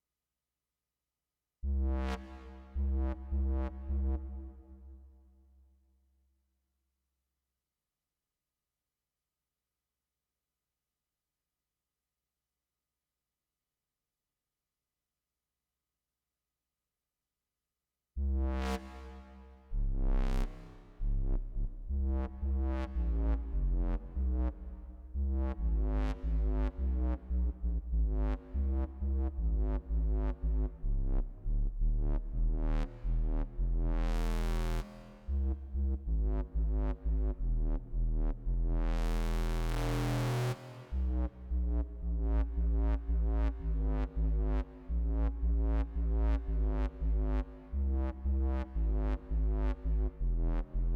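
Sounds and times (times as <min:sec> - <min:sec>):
synth bass line: 0:19.8 - 0:50.9.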